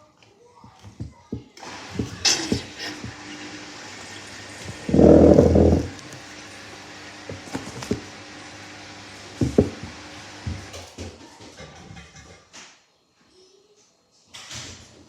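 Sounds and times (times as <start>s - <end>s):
washing machine humming: 1.6s - 11.0s.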